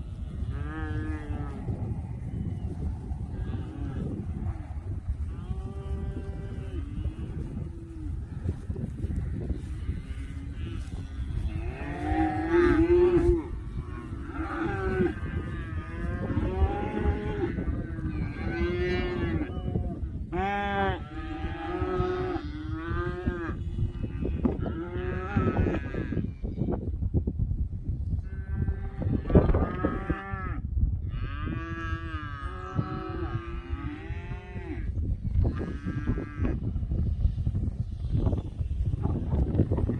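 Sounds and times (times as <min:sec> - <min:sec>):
cattle mooing: 0:00.5 - 0:02.3, 0:09.3 - 0:26.2, 0:35.5 - 0:36.6.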